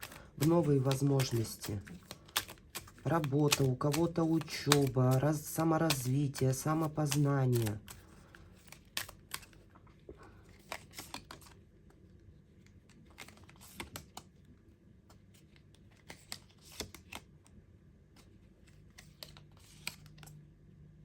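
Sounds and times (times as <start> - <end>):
cards clicking and rustling: 0.0 - 11.6, 12.6 - 14.5, 15.1 - 17.4, 18.1 - 20.4.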